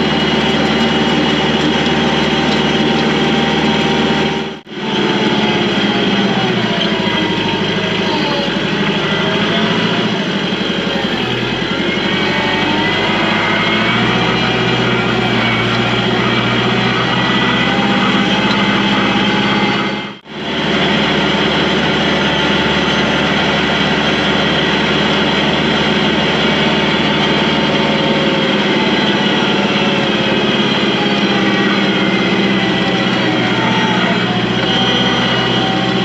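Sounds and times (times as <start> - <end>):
vehicle engine running: 0.0 - 36.0.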